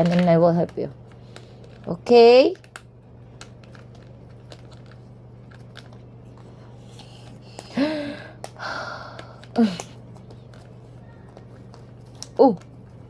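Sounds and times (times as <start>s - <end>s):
puzzle pieces clicking: 0.0s - 0.7s
steady low hum: 0.0s - 13.0s.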